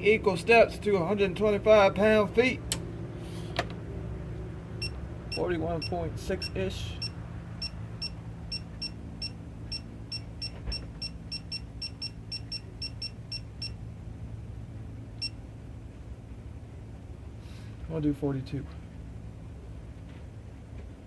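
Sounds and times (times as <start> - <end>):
steady low hum: 0.0 - 21.0
electronic button beeps: 4.8 - 13.8.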